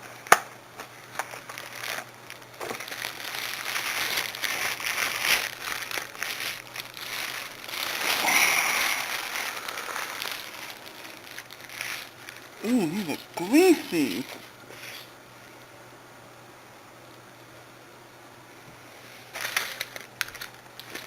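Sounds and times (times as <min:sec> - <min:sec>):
plastic packaging crinkling: 0:00.8 - 0:12.6, 0:19.3 - 0:21.0.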